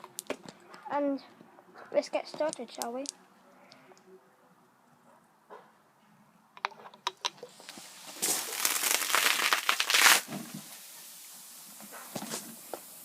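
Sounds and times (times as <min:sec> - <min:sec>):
soda bottle fizzing hiss: 0:07.4 - 0:13.0.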